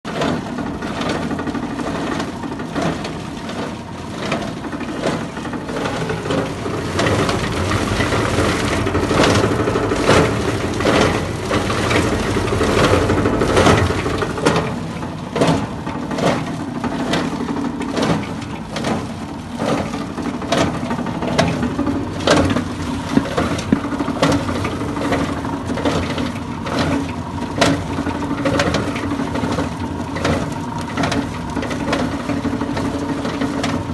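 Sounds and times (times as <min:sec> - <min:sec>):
grinder motor hum: 0:00.1 - 0:33.9
sharp cracks and knocks: 0:15.4 - 0:27.0.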